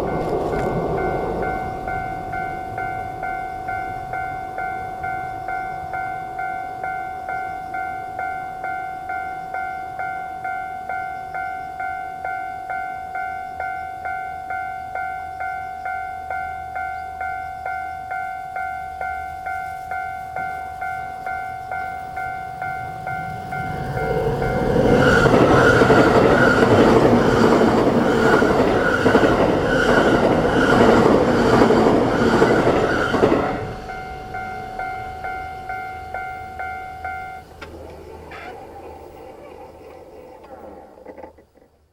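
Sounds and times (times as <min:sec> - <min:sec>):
train wheels clattering over rails: 0:00.0 - 0:08.2, 0:17.7 - 0:41.9
level-crossing bell dinging: 0:00.0 - 0:41.3.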